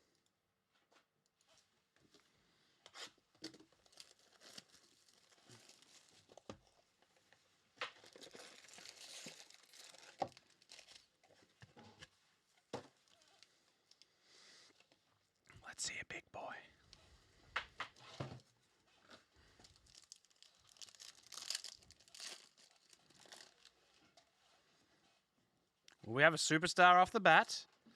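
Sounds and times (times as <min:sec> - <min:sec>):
wrapping crinkling and tearing: 0:03.0 - 0:06.5, 0:07.9 - 0:11.4, 0:13.0 - 0:14.1, 0:19.0 - 0:24.2.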